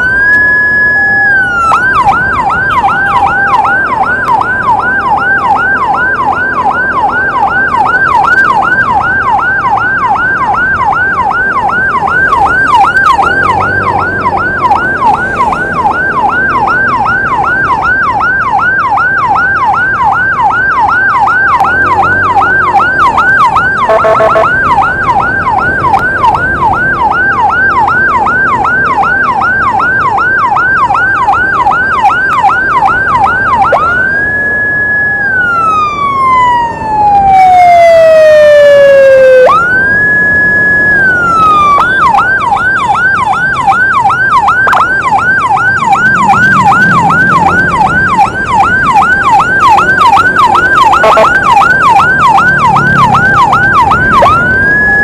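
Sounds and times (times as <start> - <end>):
emergency siren wailing and yelping: 0.0 - 55.0.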